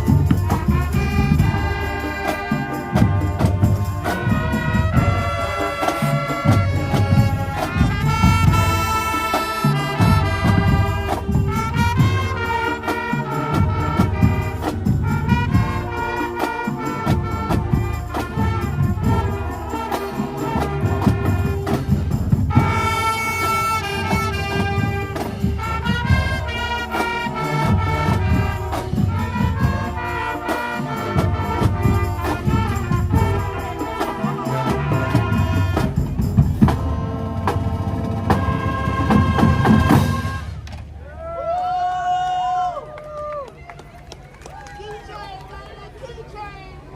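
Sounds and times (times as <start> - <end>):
held brass chord: 0.0 - 40.6
marching band playing: 0.0 - 41.4.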